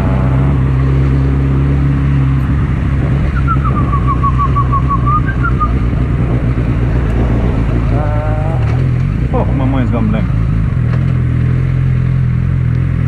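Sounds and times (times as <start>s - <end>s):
motorcycle engine running: 0.0s - 13.0s
wind noise on microphone: 2.3s - 9.2s.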